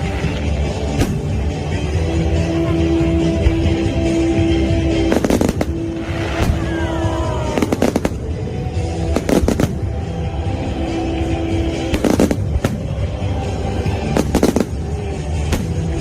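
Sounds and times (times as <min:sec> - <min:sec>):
music over loudspeakers: 0:00.0 - 0:16.0
fireworks bangs: 0:05.0 - 0:10.1.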